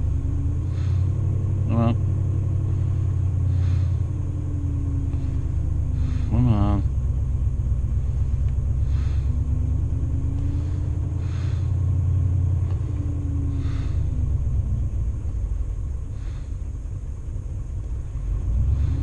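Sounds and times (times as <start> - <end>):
car engine rumbling: 0.0 - 19.0.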